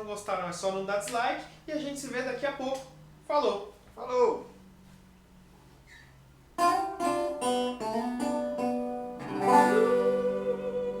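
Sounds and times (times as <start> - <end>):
guitar plucked notes and chord: 6.6 - 11.0.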